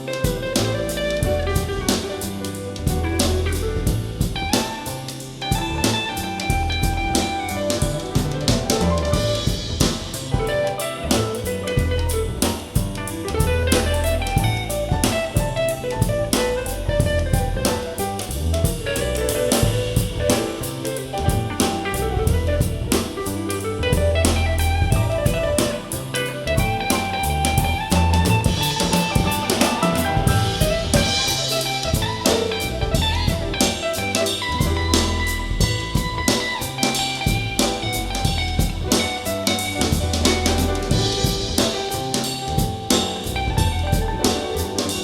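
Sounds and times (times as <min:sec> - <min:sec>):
jazz band instrumental: 0:00.0 - 0:45.0.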